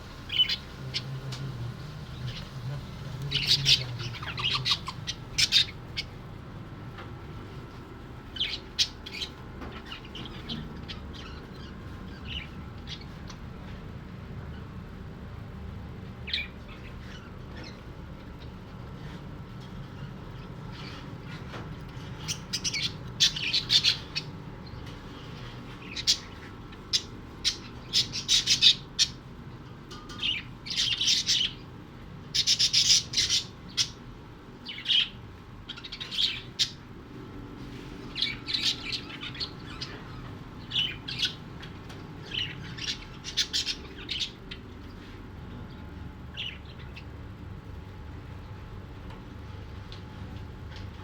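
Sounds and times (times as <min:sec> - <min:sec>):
steady low hum: 0:00.0 - 0:51.0
parrot squawking: 0:00.3 - 0:01.1, 0:03.3 - 0:06.2.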